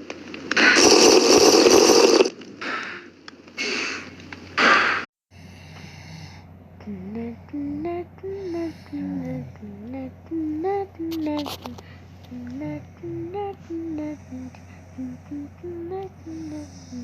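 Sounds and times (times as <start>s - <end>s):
low steady hum: 2.1s - 17.0s
person humming a tune: 6.8s - 17.0s.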